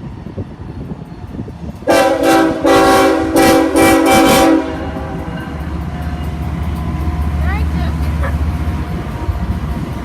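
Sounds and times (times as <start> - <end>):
locomotive air horn blasts: 1.9 - 5.6.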